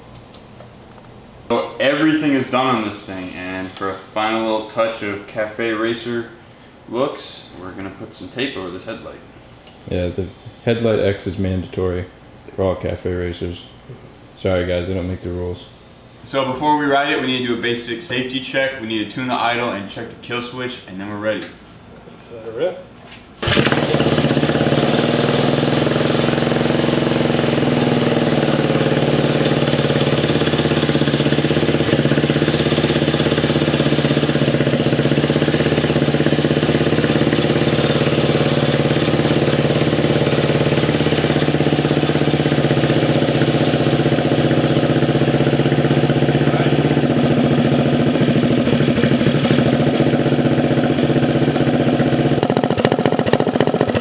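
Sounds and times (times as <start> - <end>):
small engine idling: 23.4 - 54.0.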